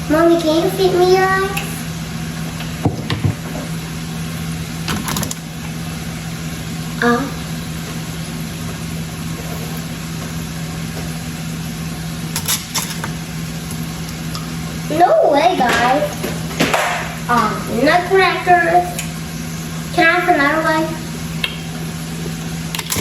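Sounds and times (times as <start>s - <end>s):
kitchen appliance motor humming: 0.0s - 23.0s.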